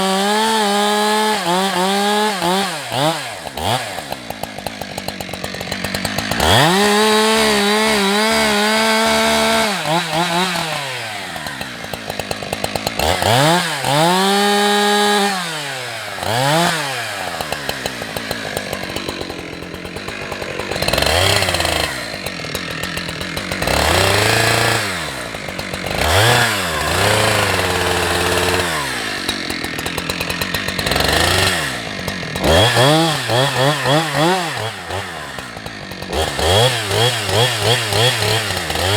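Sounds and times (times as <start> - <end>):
chainsaw revving: 0.0 - 38.9.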